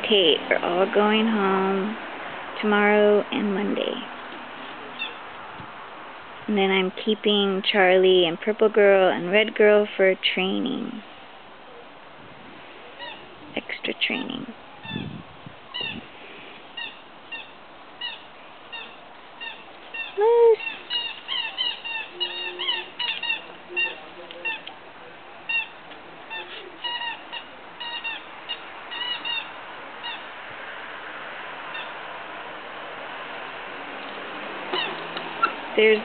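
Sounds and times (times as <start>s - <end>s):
puppies yelping: 16.8s - 24.7s, 34.7s - 35.7s.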